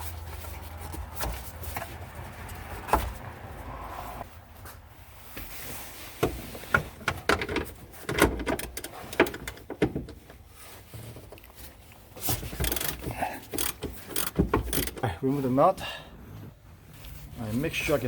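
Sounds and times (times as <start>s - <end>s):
hand tools clicking on nuts: 12.4s - 15.1s.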